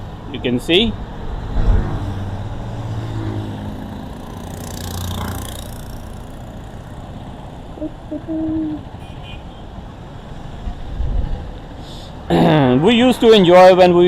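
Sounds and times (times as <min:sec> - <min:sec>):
engine hum and road noise: 0:00.0 - 0:14.0
passing vehicle whoosh: 0:00.8 - 0:07.5.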